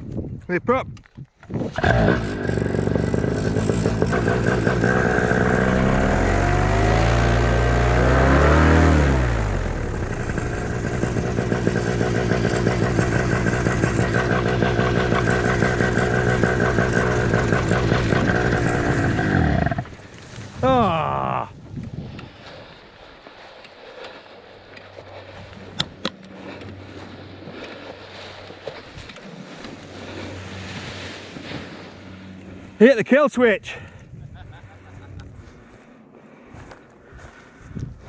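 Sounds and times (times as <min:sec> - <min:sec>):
paramotor engine revving: 0:01.7 - 0:20.5.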